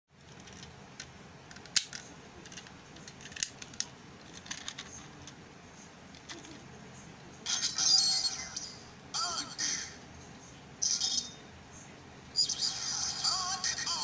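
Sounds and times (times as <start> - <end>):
plastic toy clicking: 1.5 - 4.9.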